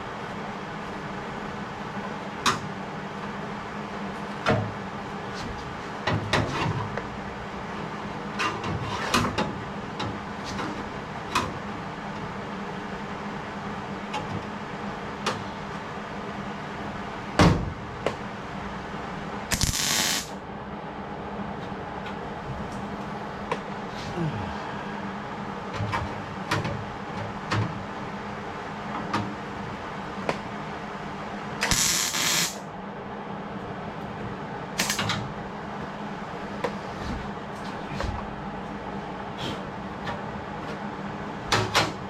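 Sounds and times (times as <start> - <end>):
steady hum: 14.6 - 41.5
hissing burst: 19.5 - 20.4, 31.7 - 32.6.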